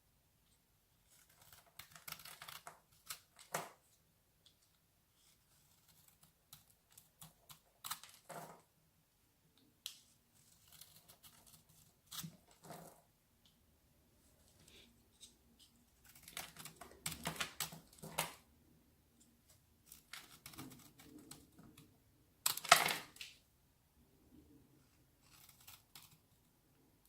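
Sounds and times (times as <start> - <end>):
soft clicks scratches and crackles: 0.4 - 8.7, 19.2 - 23.4, 24.9 - 26.5.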